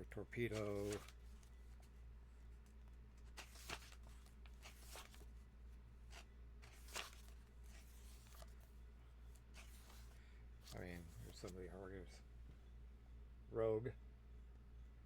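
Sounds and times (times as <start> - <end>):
pages turning: 0.4 - 1.9, 3.1 - 5.4, 6.0 - 8.7, 9.3 - 11.6.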